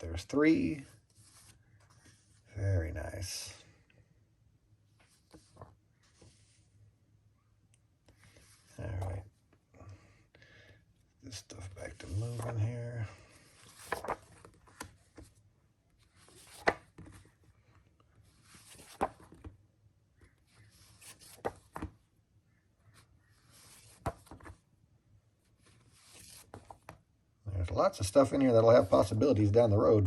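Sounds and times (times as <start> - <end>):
paper rustling and sliding: 0.9 - 2.4, 5.0 - 6.7, 11.8 - 15.4, 16.0 - 19.6, 20.2 - 22.0, 22.9 - 24.6, 25.4 - 27.0
book tapping down: 21.2 - 22.0.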